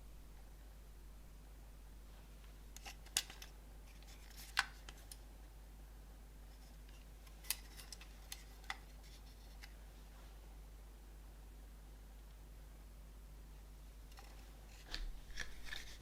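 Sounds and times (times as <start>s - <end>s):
plastic cassette case clicking: 2.8s - 5.2s, 7.4s - 8.9s.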